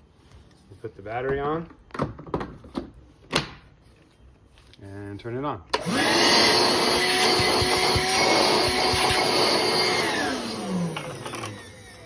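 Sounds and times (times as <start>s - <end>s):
vacuum motor whining: 5.8s - 12.0s.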